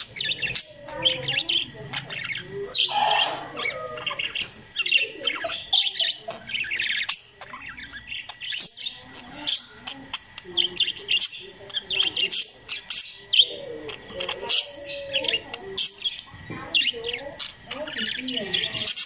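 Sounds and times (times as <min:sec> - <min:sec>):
parakeets chirping and warbling: 0:00.0 - 0:19.0.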